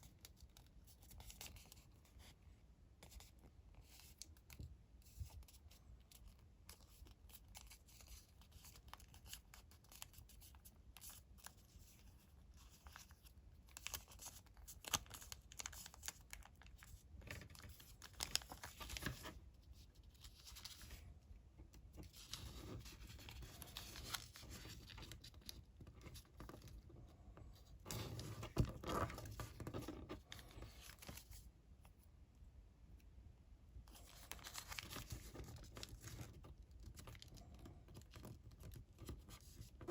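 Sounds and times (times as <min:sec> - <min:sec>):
paper rustling and creasing: 0:03.0 - 0:31.5, 0:33.9 - 0:39.9.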